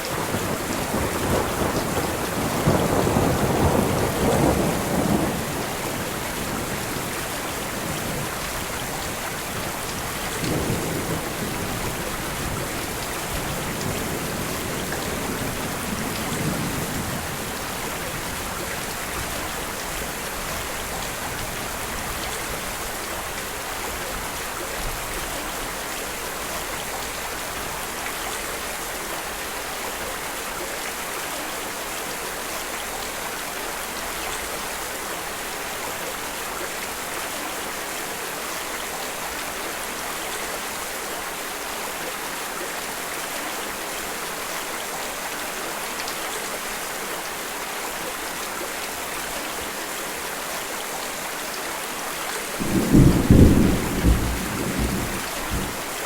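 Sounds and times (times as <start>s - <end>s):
steady rain falling: 0.0s - 56.0s
thunder rumble: 52.6s - 55.8s.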